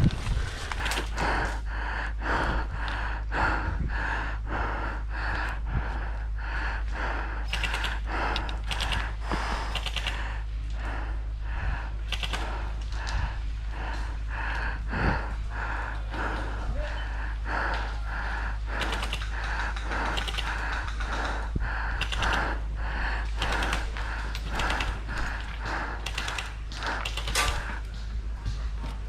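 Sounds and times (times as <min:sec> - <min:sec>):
airsoft guns firing: 0:07.5 - 0:10.2, 0:12.1 - 0:12.8, 0:18.8 - 0:21.2, 0:21.9 - 0:22.6, 0:23.3 - 0:25.3, 0:26.0 - 0:27.8.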